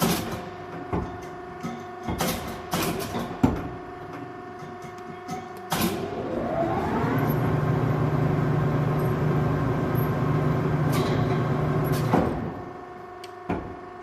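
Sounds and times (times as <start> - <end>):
lathe motor whining and humming: 6.1 - 11.9.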